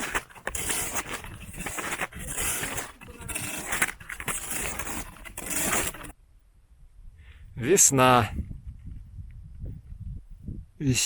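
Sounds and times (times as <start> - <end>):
snowshoe footsteps crunching snow: 0.0 - 6.2.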